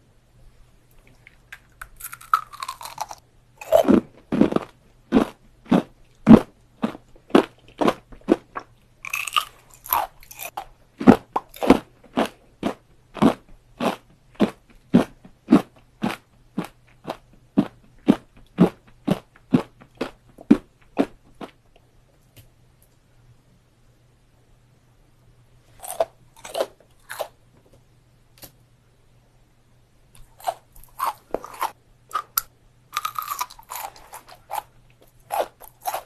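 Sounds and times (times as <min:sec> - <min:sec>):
crunchy candy chewing: 0:01.1 - 0:21.6, 0:25.8 - 0:27.4, 0:30.2 - 0:36.0.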